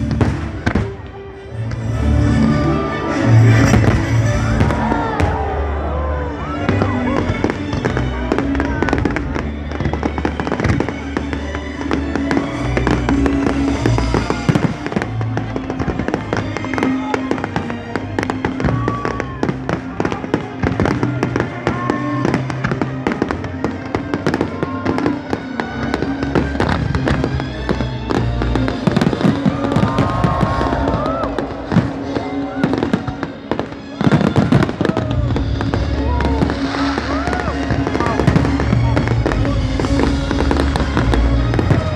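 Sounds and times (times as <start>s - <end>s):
fireworks crackling and banging: 0.0s - 41.9s
people's voices: 0.0s - 41.9s.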